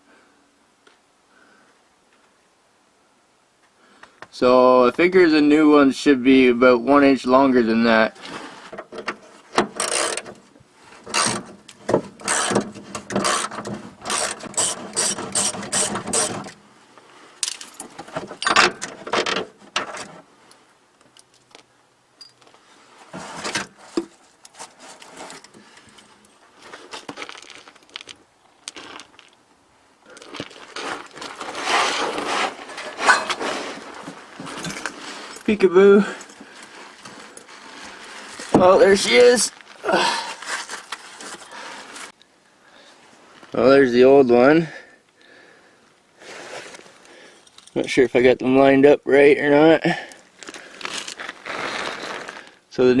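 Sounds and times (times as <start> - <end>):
ratchet wrench clicking: 9.8 - 10.2, 12.3 - 12.6, 14.1 - 16.3.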